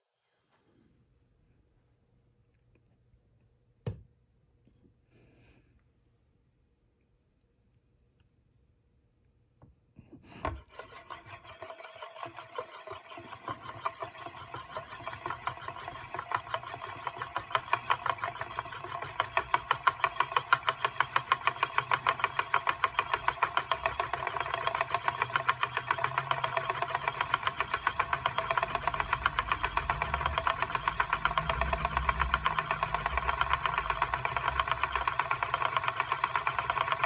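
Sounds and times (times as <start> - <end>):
spinning disk whirring rattle: 10.4 - 37.0.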